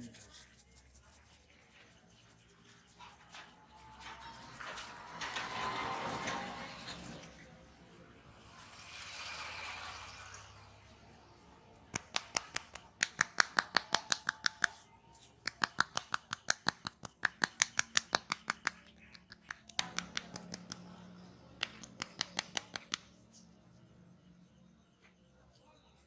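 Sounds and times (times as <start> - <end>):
rapid sharp clicks of head massage: 11.9 - 21.0, 21.6 - 23.4.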